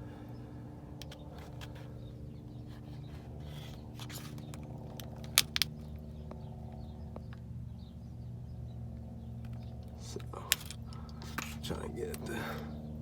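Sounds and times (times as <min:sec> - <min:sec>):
steady low hum: 0:00.0 - 0:13.0
small metal clicks and taps: 0:01.0 - 0:01.8.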